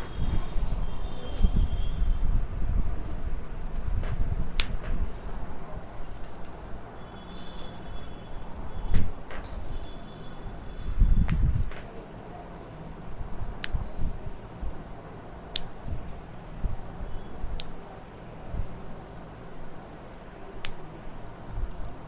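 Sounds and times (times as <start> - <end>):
faint tinkling chimes: 6.0 - 10.9, 21.6 - 22.0.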